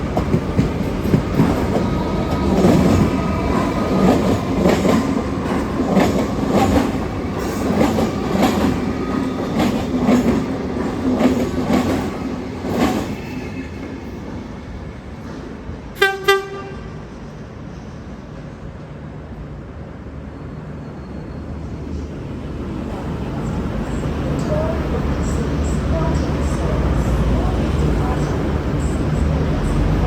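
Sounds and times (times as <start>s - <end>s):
train horn toots: 16.0s - 17.0s.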